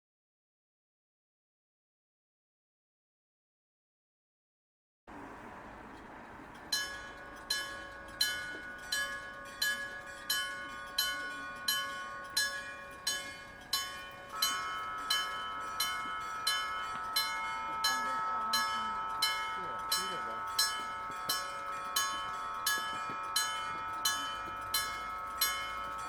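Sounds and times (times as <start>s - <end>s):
steady ringing tone: 6.5s - 26.0s
level crossing gong bell: 6.6s - 26.0s.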